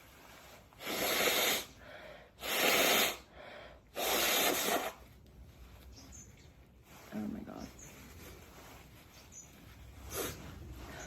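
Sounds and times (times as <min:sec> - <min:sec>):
woman blowing her nose: 0:00.6 - 0:05.1, 0:10.0 - 0:10.7.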